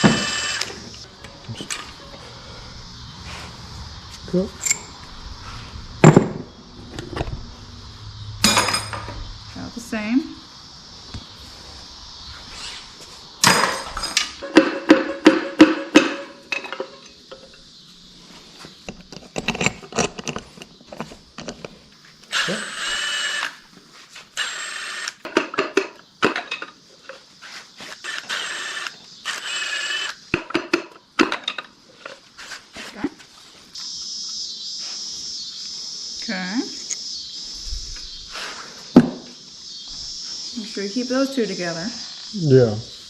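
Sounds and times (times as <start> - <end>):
power tool running: 0.0 - 2.3, 22.3 - 23.6, 24.4 - 25.3, 27.9 - 30.2
metal engine parts clanking: 4.6 - 5.0, 8.4 - 9.2, 18.9 - 21.7.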